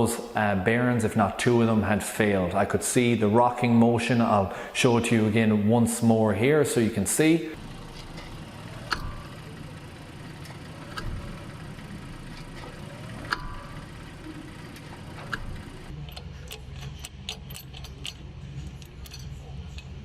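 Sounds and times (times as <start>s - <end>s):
car engine running: 6.3s - 20.0s.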